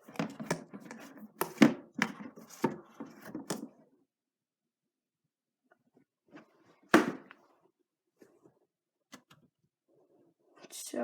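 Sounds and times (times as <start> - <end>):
model and packaging being handled: 0.0 - 3.7.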